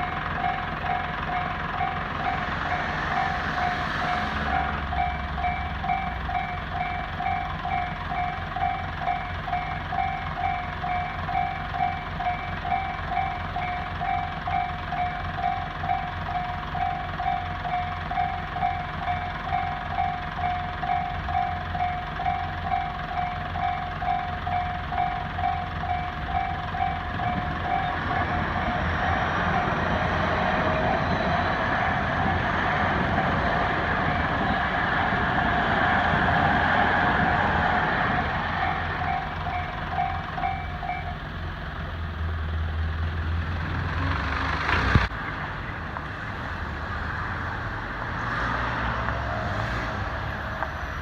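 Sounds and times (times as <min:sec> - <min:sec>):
level crossing bell dinging: 0:00.0 - 0:30.0, 0:38.5 - 0:41.3
train running noise: 0:00.0 - 0:51.0.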